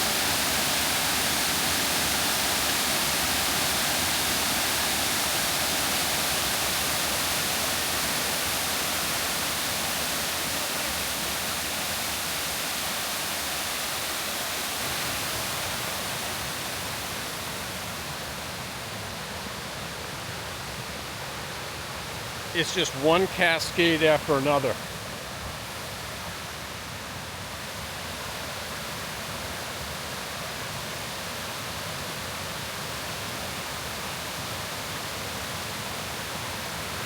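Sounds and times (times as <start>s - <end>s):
waterfall roaring: 0.0s - 18.8s, 22.5s - 24.8s.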